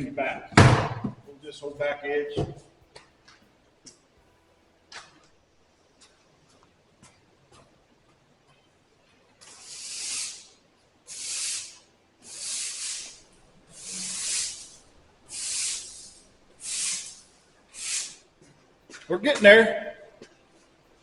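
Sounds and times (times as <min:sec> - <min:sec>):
broom sweeping floor: 0:09.4 - 0:20.8.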